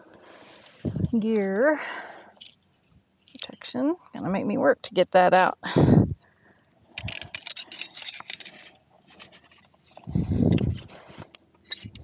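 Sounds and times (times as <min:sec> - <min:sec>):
metal scraping against rock: 0:06.9 - 0:12.0.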